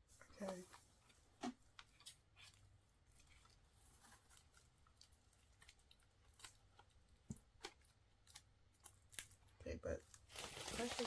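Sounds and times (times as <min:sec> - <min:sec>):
packaging clicks and rustles: 0:10.1 - 0:11.0.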